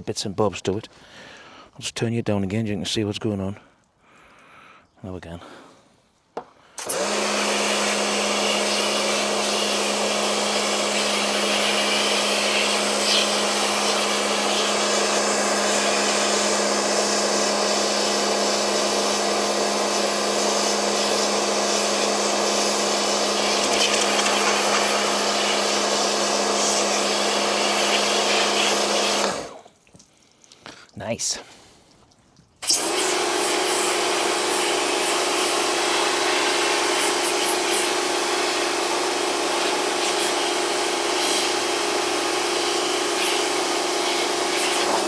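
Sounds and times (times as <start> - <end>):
pressure washer spraying water: 6.8 - 29.6, 32.6 - 45.0.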